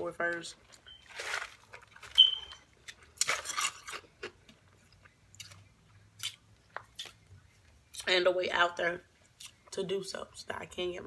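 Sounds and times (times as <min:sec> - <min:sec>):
crunch or rustle: 0:00.6 - 0:04.0.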